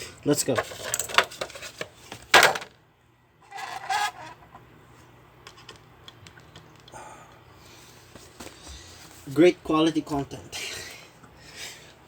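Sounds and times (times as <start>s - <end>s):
loud plastic crack: 2.2s - 2.8s.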